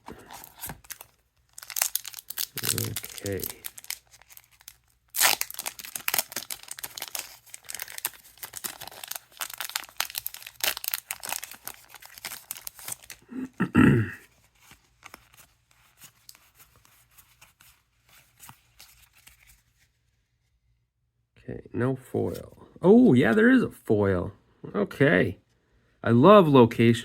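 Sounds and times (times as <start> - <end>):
cards being handled: 0.0 - 13.2, 14.2 - 20.1, 22.2 - 22.6
wrapper tearing and crinkling: 0.0 - 13.2.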